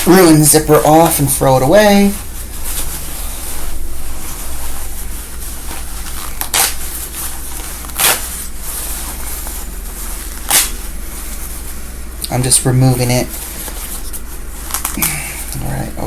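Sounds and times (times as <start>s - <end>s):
steady low hum: 0.0s - 16.0s
fabric ripping: 1.8s - 11.7s.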